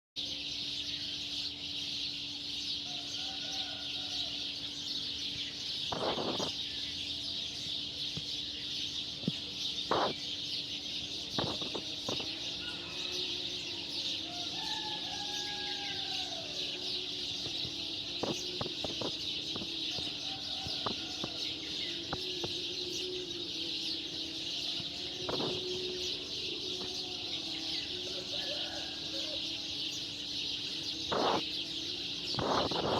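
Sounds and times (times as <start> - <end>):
birds chirping: 0.2 - 32.9
steady low hum: 4.0 - 32.9
chickens calling: 5.9 - 6.6.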